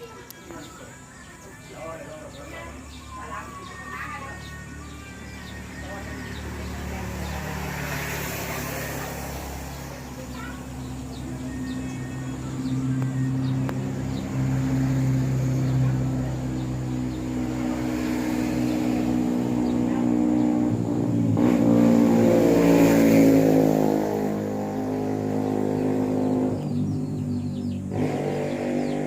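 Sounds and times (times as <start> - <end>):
vehicle engine running: 0.0 - 29.0.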